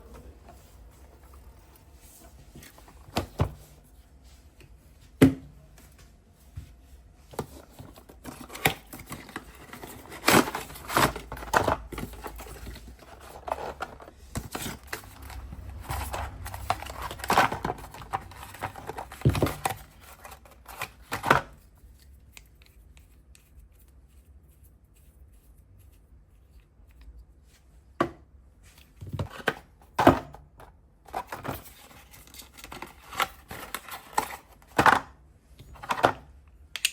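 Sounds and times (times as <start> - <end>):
objects knocking and rustling: 7.3 - 21.6.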